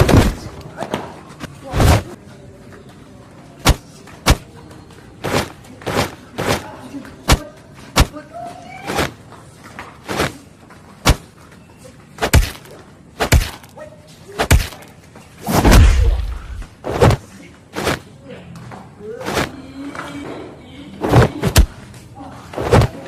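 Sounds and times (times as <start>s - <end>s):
punch and kick hits: 0.0s - 0.5s, 3.7s - 4.4s, 12.2s - 12.6s, 13.2s - 13.6s, 14.4s - 14.8s, 15.5s - 17.2s, 21.0s - 21.7s, 22.6s - 23.0s
heavy hit with deep thud: 15.5s - 17.2s.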